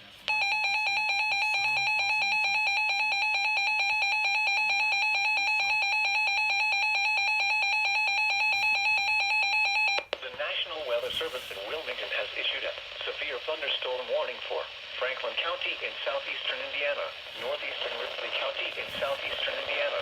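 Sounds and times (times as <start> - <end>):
two-tone alarm: 0.3 - 10.1.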